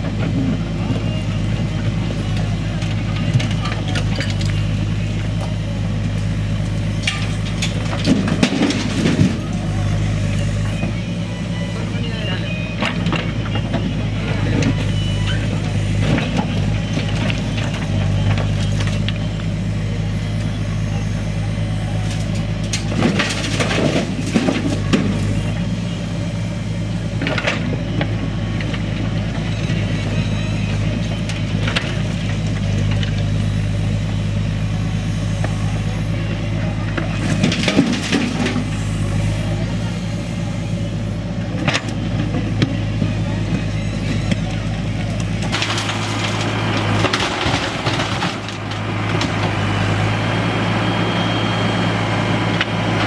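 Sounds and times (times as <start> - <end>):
diesel engine running: 0.0 - 53.0
stones clattering into trolley: 7.0 - 9.6, 22.0 - 25.6, 36.9 - 38.8, 41.6 - 49.7.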